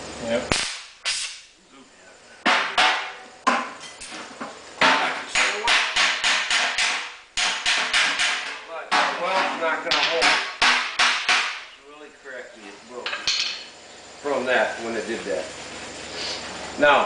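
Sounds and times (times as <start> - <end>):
hammer striking sheet metal: 2.4 - 3.7, 4.8 - 11.7.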